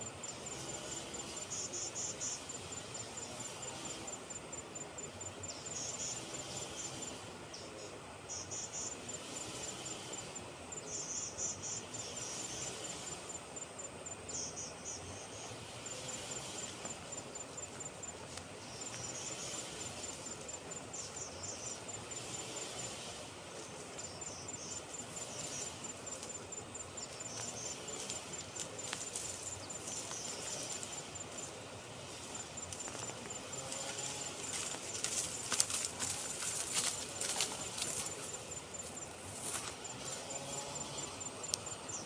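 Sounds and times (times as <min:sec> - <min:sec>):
insect trilling: 0:08.3 - 0:42.0
crackles and rustles: 0:15.8 - 0:42.0.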